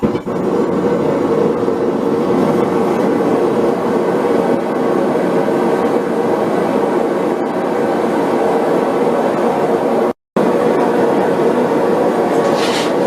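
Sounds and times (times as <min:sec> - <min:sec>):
gas forge burner rushing: 0:00.0 - 0:13.0.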